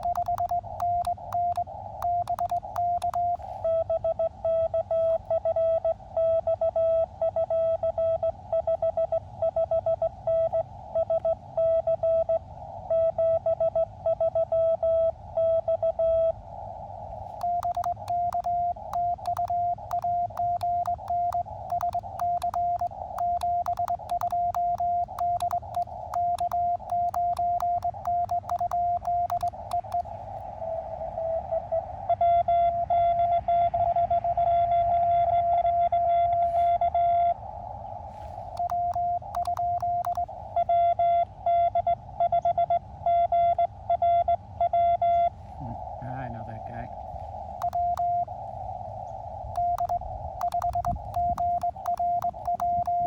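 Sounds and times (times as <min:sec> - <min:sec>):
higher-pitched morse code reply: 0:00.0 - 0:03.4, 0:17.4 - 0:30.1, 0:38.6 - 0:40.2, 0:47.6 - 0:48.2, 0:49.6 - 0:53.0
sharp clicks: 0:00.0 - 0:03.5, 0:17.3 - 0:30.2, 0:38.5 - 0:40.3, 0:47.6 - 0:48.2, 0:49.6 - 0:53.0
morse code sidetone: 0:00.0 - 0:12.4, 0:17.3 - 0:30.1, 0:38.5 - 0:41.0, 0:47.6 - 0:48.3, 0:49.6 - 0:53.0.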